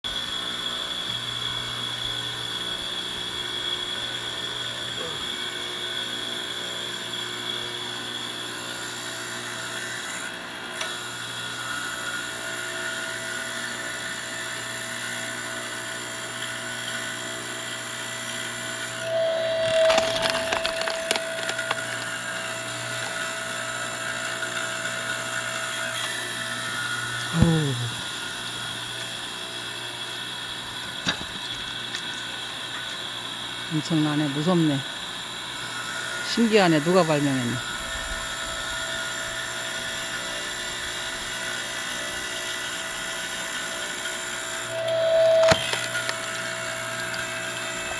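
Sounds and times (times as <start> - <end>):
firewood processor machine hum: 0.0 - 47.9
wood cracking and splintering: 19.6 - 22.2, 45.5 - 46.2.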